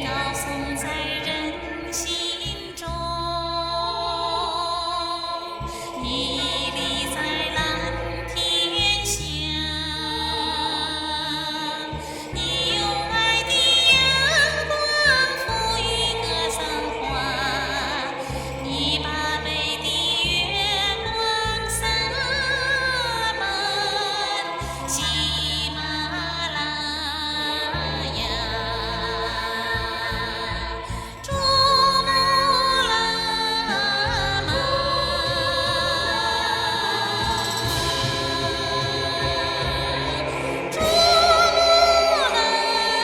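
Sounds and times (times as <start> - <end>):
backing track: 0.0 - 43.0
woman singing high melody: 0.0 - 43.0.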